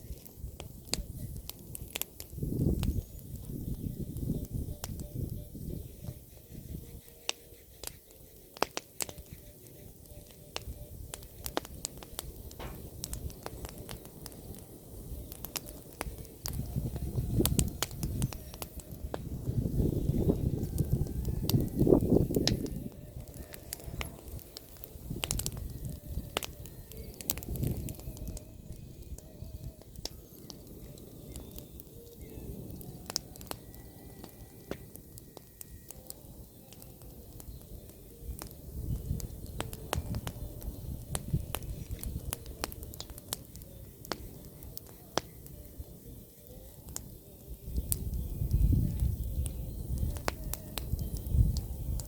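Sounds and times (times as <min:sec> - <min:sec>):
bonfire crackling and popping: 0:00.0 - 0:52.0
sharp pops: 0:10.6 - 0:14.4.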